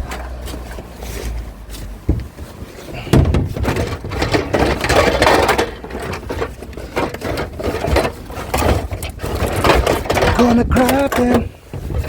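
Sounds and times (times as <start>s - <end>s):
wires rustling and clattering: 0.0s - 12.0s
heavy thump: 2.0s - 5.5s.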